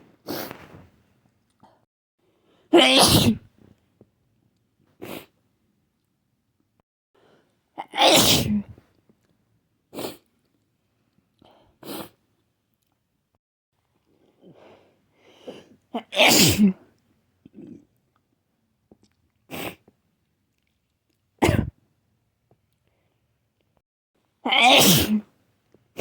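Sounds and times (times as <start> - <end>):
person sneezing: 2.8 - 3.5, 8.0 - 8.7, 15.5 - 16.8, 21.4 - 21.7, 24.5 - 25.3.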